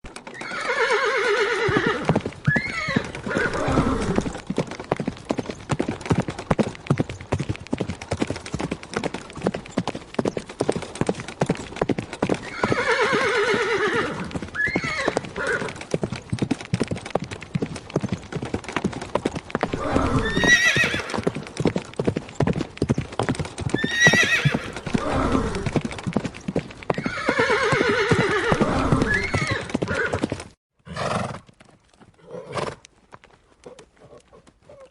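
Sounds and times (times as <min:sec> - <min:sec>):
horse hooves galloping: 0:00.0 - 0:34.9
horse whinnying: 0:00.3 - 0:04.4, 0:12.4 - 0:15.8, 0:19.7 - 0:21.6, 0:23.7 - 0:25.8, 0:26.9 - 0:30.2.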